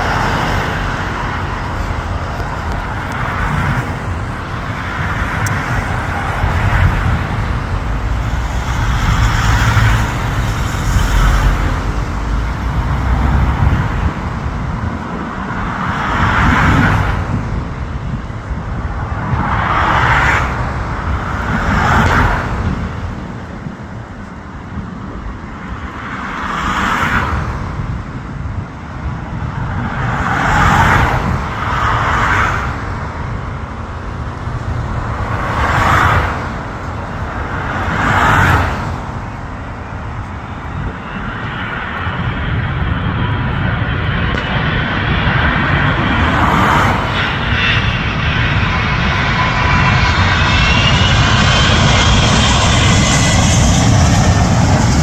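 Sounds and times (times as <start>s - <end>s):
jet engines rumbling: 0.0s - 55.0s
vehicles passing by: 0.0s - 55.0s.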